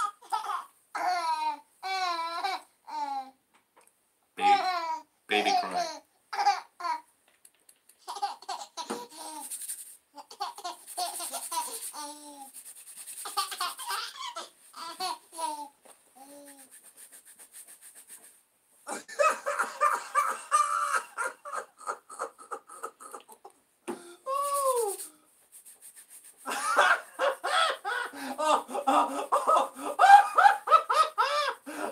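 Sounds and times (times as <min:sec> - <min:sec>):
recorded laughter: 0:18.9 - 0:23.5, 0:26.5 - 0:31.9.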